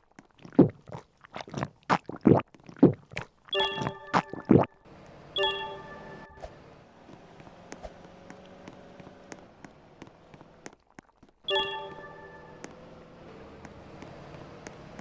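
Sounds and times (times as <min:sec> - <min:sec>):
chime of steady tones: 0:03.6 - 0:04.5, 0:05.4 - 0:06.4, 0:11.5 - 0:12.7.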